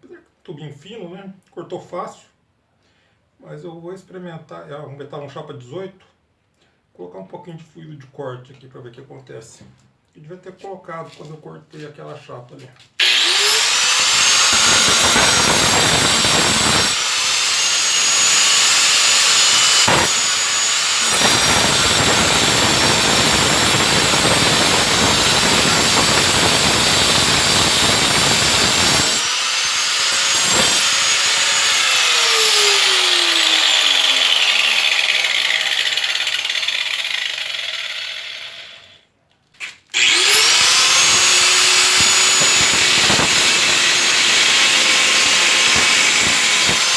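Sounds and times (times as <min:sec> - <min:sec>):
angle grinder cutting steel sheet: 0:13.0 - 0:39.0, 0:40.0 - 0:46.9.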